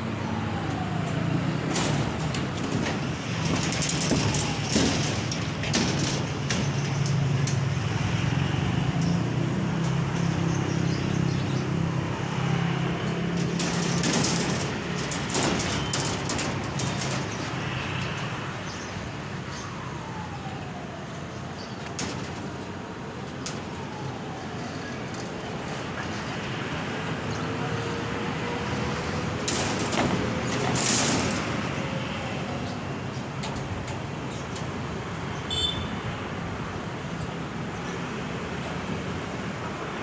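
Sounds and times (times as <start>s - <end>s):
clicks and knocks: 0.7s - 7.7s, 13.4s - 18.4s, 29.0s - 31.8s.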